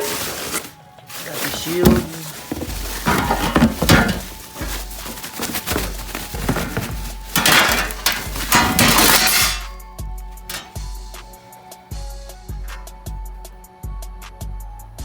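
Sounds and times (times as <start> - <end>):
metal parts clinking: 1.5 - 9.8, 10.4 - 10.9.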